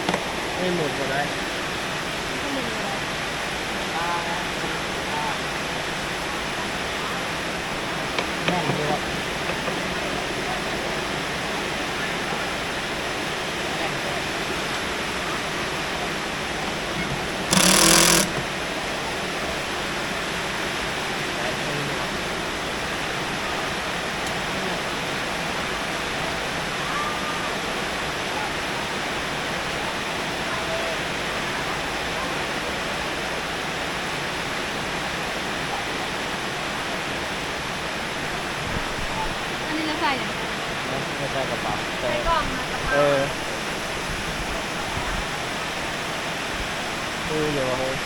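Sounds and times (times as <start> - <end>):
heavy rain: 0.0 - 17.1, 18.6 - 48.0
small electric motor whirring: 17.5 - 18.5.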